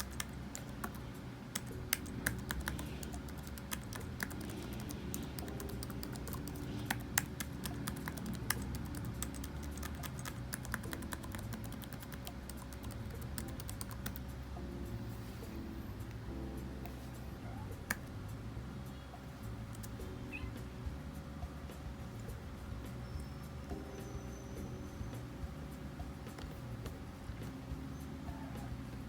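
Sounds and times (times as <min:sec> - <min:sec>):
laptop keyboard typing: 0:00.0 - 0:14.3, 0:19.6 - 0:20.4.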